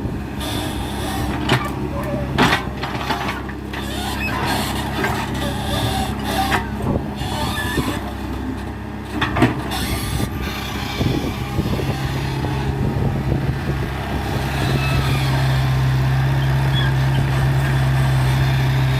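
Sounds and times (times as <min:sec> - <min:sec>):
excavator diesel engine running: 0:00.0 - 0:18.9.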